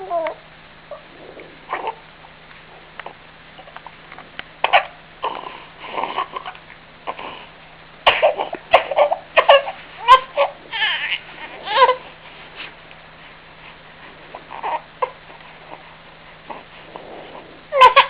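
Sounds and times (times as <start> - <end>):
baby vocal sounds: 0.0 - 2.0, 4.6 - 7.4, 8.2 - 12.1, 14.3 - 15.9.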